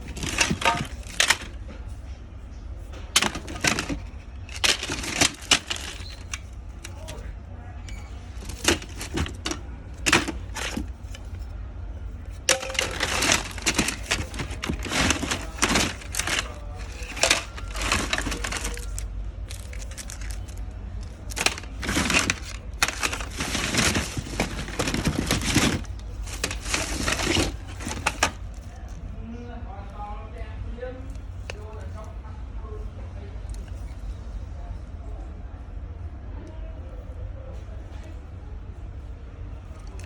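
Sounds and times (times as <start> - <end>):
plastic phones rustling and clattering: 0.0 - 2.0, 2.8 - 29.0, 39.8 - 40.0.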